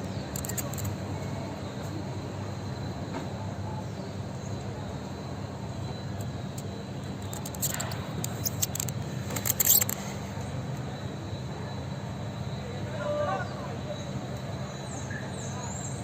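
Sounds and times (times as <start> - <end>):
sharp clicks and knocks: 0.3 - 0.9, 6.2 - 10.0.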